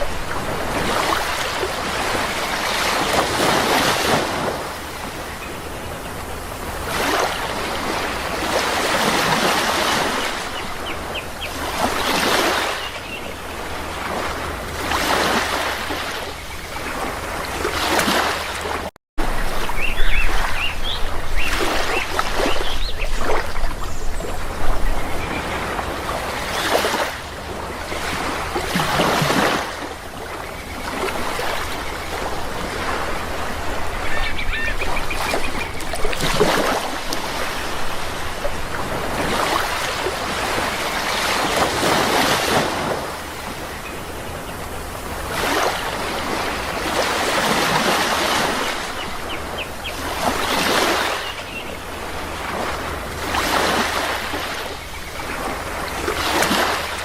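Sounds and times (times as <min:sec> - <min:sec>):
sea waves breaking: 0:00.0 - 0:57.0
short bird calls: 0:34.0 - 0:35.8.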